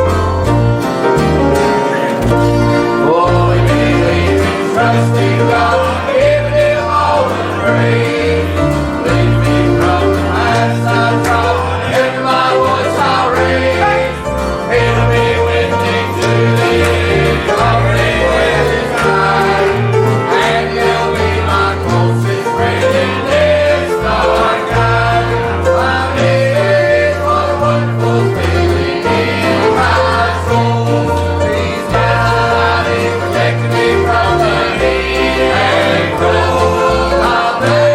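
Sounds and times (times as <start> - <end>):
guitar: 0.0 - 37.9
voices singing: 1.8 - 37.9.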